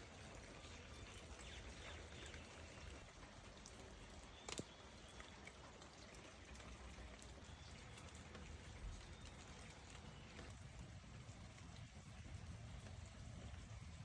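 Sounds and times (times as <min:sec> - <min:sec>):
light rain drops ticking: 0:00.0 - 0:14.0
steady rain hiss: 0:06.8 - 0:14.0.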